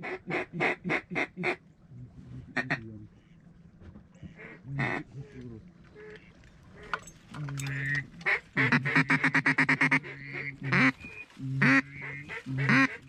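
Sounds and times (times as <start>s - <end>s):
duck quacking: 4.3s - 5.4s, 7.7s - 13.0s.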